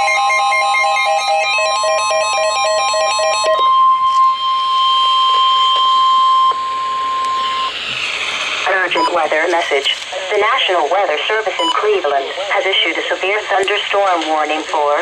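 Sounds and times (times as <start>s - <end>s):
rapid electronic beeps: 0.0s - 9.3s, 11.6s - 11.9s
steady warning alarm tone: 0.0s - 9.9s.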